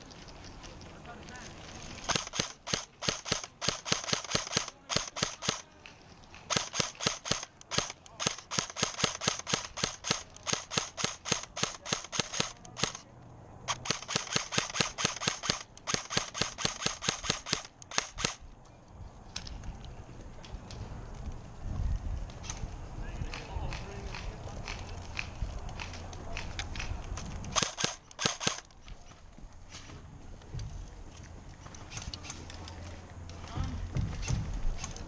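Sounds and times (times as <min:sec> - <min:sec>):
airsoft gun firing rapid shots: 0:02.1 - 0:05.6, 0:06.5 - 0:13.0, 0:13.7 - 0:18.4, 0:27.6 - 0:28.6.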